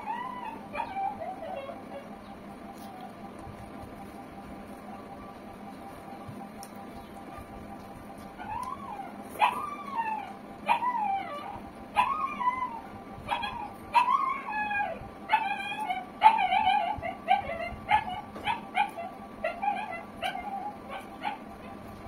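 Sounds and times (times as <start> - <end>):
dog whining and whimpering: 0.0 - 3.0, 8.2 - 21.9.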